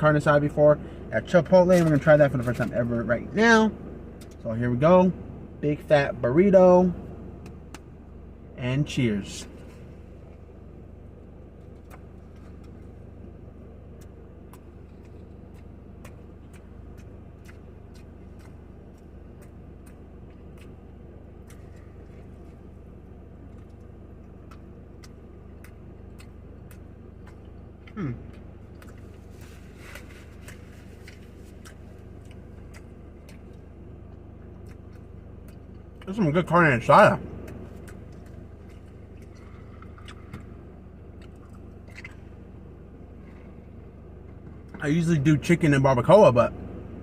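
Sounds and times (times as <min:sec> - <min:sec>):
steady low hum: 0:00.0 - 0:47.0
person chewing food: 0:09.5 - 0:36.1, 0:37.2 - 0:44.8
wet mouth clicks: 0:14.0 - 0:20.8, 0:37.3 - 0:40.5, 0:41.2 - 0:42.3
person humming mm: 0:27.9 - 0:28.3.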